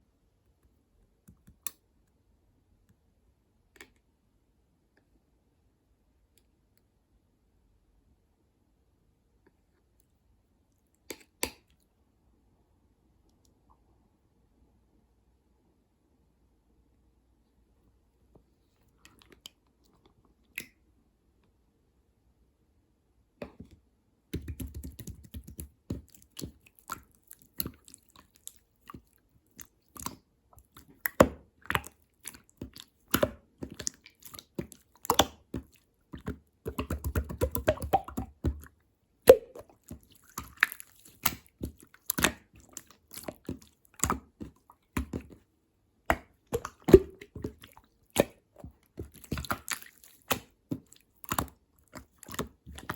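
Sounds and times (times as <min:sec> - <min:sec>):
slime squished by hand: 0:24.3 - 0:52.9
slime crackling: 0:46.5 - 0:52.9.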